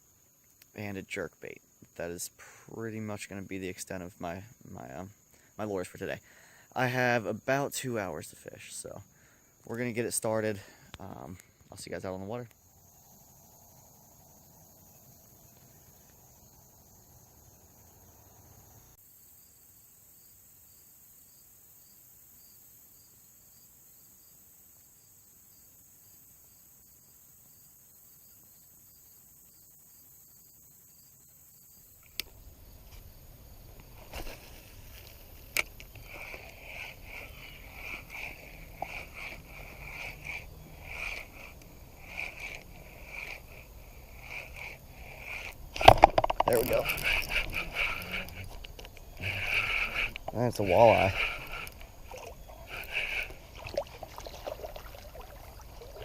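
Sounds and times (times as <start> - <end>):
insects trilling: 0.0 - 56.0
high rasping strokes: 33.8 - 56.0
sharp clicks: 35.0 - 51.9
pulsing chirp: 35.9 - 56.0.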